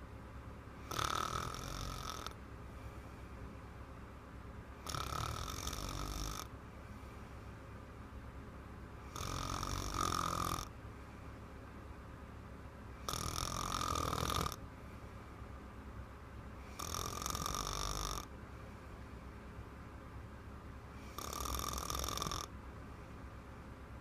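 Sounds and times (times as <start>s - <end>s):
girl snoring loudly: 0.9s - 2.4s, 4.9s - 6.5s, 9.1s - 10.7s, 13.1s - 14.6s, 16.7s - 18.3s, 21.1s - 22.5s.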